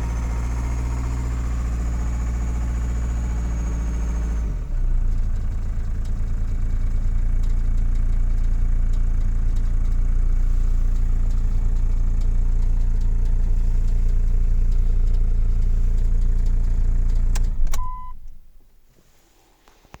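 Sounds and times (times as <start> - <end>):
diesel engine idling: 0.0 - 18.7
short beep: 17.8 - 18.3.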